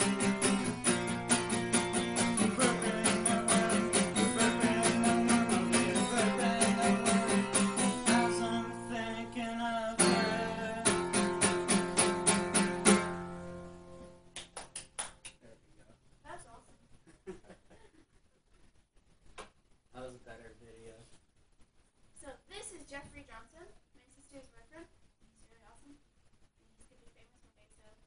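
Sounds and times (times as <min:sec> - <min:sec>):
acoustic guitar strumming: 0:00.0 - 0:14.4.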